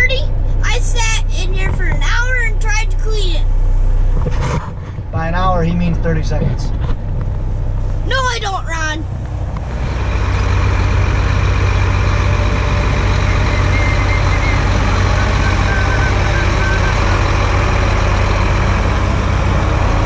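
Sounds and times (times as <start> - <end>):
truck engine running: 0.0 - 20.0.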